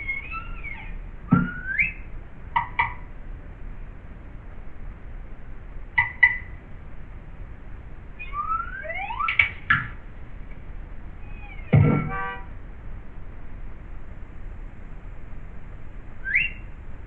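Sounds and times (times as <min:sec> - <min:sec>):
short high squeaks: 0:00.0 - 0:02.0, 0:11.2 - 0:12.3
sharp clicks: 0:09.2 - 0:10.0
rising whistled glides: 0:16.2 - 0:16.7.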